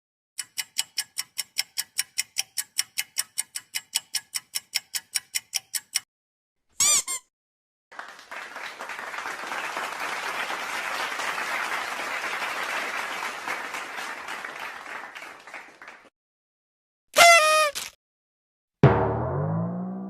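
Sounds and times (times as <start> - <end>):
crowd applause: 7.9 - 16.1.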